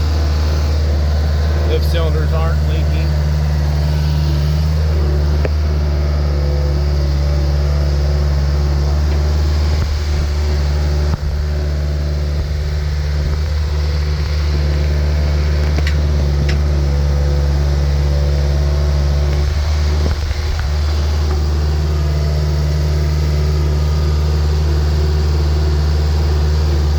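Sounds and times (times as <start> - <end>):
diesel engine idling: 0.0 - 26.9
engine bump: 0.0 - 26.9.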